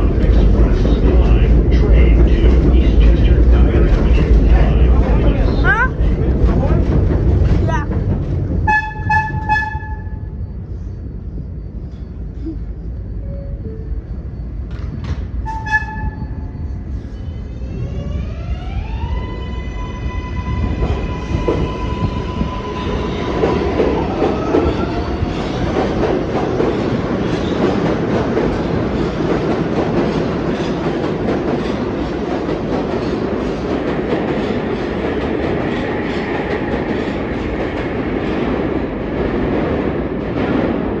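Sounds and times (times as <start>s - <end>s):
subway train rumble: 0.0s - 41.0s.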